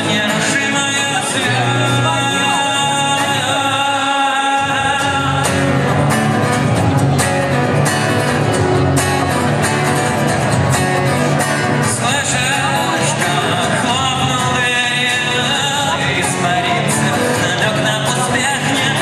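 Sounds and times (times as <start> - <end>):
person singing over a band: 0.0 - 6.0, 11.8 - 19.0.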